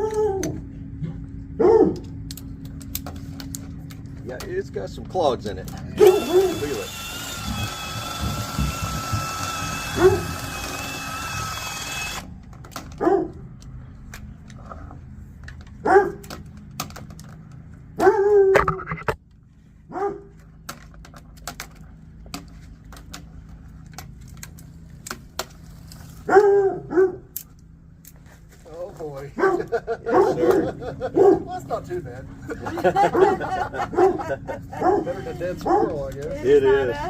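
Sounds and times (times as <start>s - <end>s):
dog barking: 1.6s - 2.0s, 13.0s - 13.4s, 15.8s - 16.2s, 18.0s - 18.6s, 19.9s - 20.3s, 26.3s - 27.3s, 29.4s - 31.5s, 33.1s - 35.9s
machine hissing and whining: 6.0s - 12.3s.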